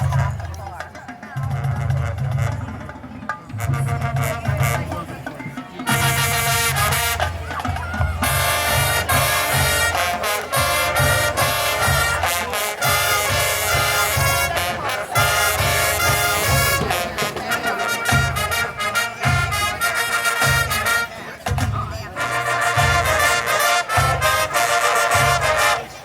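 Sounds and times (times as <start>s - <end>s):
marching band drums: 0.0s - 26.0s
brass section chords: 3.5s - 26.0s.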